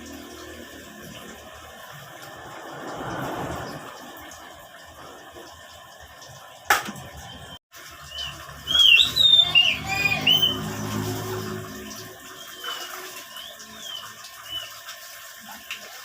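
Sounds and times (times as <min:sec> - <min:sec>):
bird singing whistled notes: 0:07.2 - 0:10.6.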